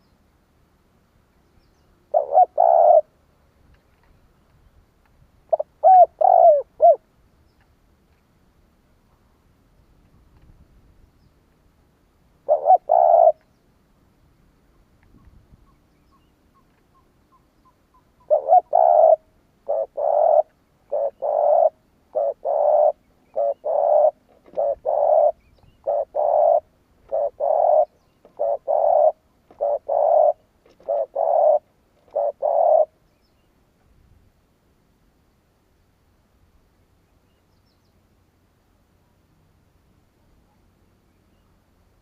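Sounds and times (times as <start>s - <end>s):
dove cooing: 2.1s - 3.2s, 5.5s - 7.1s, 12.4s - 13.5s, 18.2s - 33.0s.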